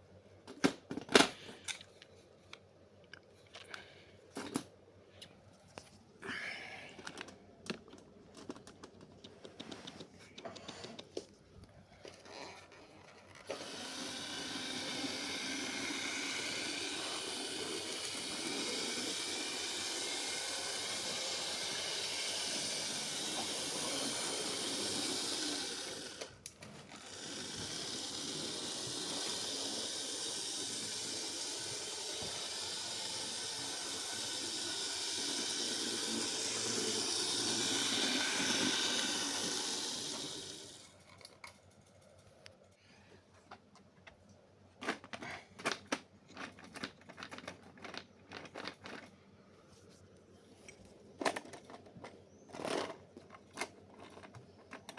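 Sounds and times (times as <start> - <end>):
model train whirring on track: 13.4 - 41.0.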